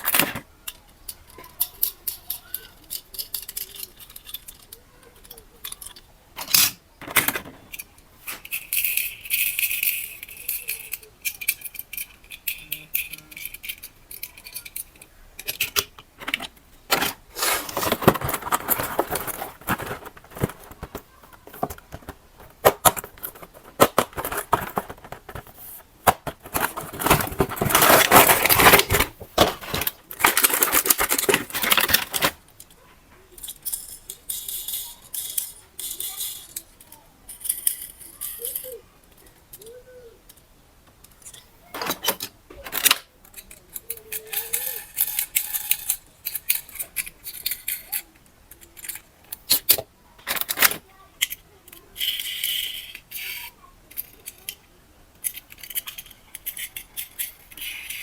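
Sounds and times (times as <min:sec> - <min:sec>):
packaging rustling and crinkling: 0:16.2 - 0:32.4.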